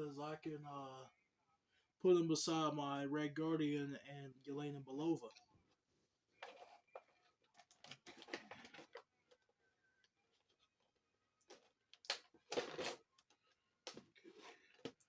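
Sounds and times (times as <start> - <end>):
plastic packaging rustling and clicking: 6.4 - 9.4.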